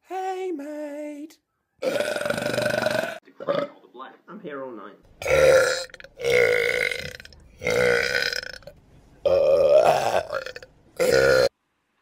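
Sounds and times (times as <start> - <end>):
loud long belches: 1.8 - 3.8, 5.2 - 11.5.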